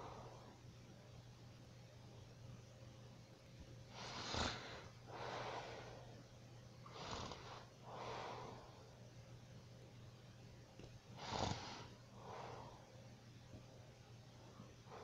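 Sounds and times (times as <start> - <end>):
person snoring: 4.0 - 5.7, 6.9 - 8.6, 11.2 - 12.6.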